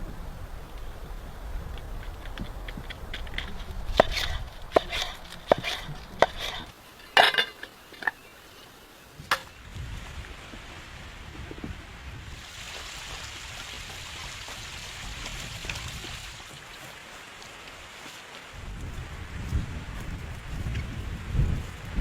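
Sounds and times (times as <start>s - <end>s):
sharp clicks and knocks: 1.7s - 8.2s, 9.3s - 9.5s.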